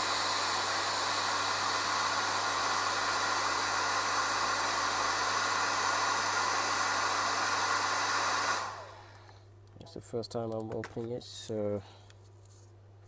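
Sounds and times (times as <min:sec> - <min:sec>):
hot-air tool blowing: 0:00.0 - 0:09.5.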